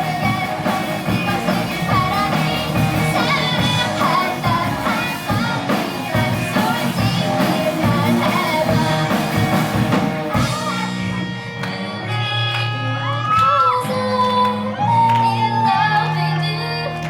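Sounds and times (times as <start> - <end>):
drum kit: 0.0 - 11.9
person singing: 0.0 - 12.4, 13.4 - 17.0
electric guitar: 0.0 - 17.0.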